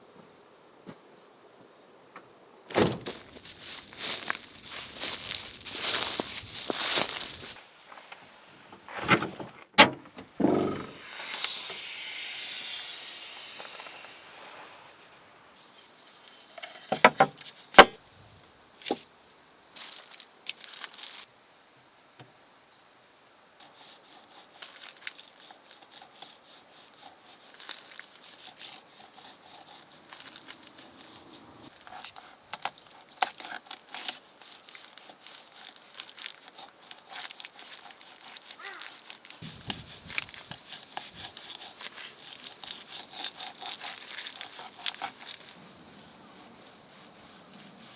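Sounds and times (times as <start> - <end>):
brief hiss: 10.2 - 15.8.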